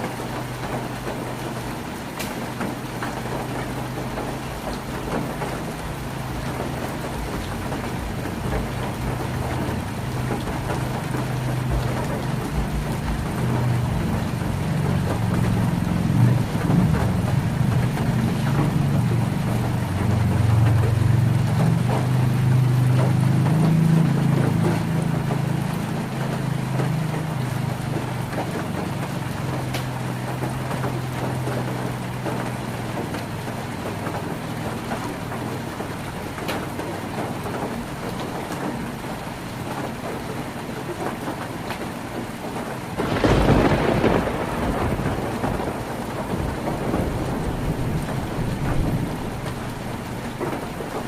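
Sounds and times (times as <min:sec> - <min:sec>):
heavy rain on a tin roof: 0:00.0 - 0:51.0
raindrop clicks: 0:00.1 - 0:51.0
low roll of thunder: 0:43.0 - 0:50.6.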